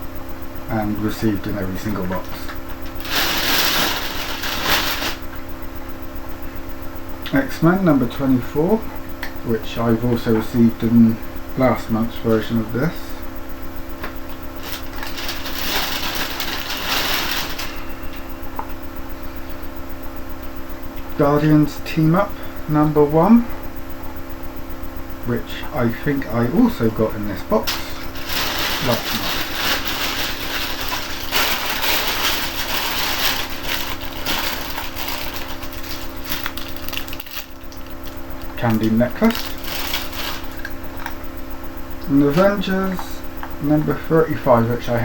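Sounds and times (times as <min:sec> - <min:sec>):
steady low hum: 0:00.0 - 0:45.0
paper rustling and crinkling: 0:02.8 - 0:05.2, 0:14.6 - 0:17.9, 0:27.7 - 0:40.8.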